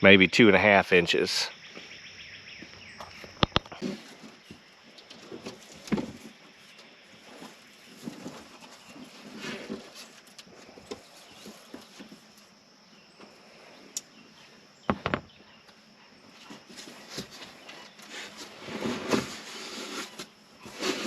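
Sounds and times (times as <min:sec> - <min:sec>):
rustling and light knocks: 0:02.6 - 0:12.6, 0:14.9 - 0:21.0.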